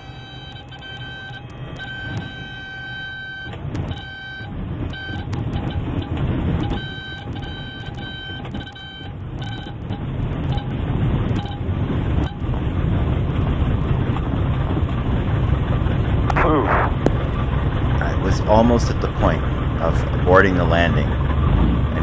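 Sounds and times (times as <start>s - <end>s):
electronic warning tone beeping: 0.0s - 12.4s, 16.3s - 22.0s
airplane engine rumbling: 0.0s - 22.0s
sharp clicks: 0.4s - 2.5s, 3.4s - 12.5s, 16.3s - 22.0s.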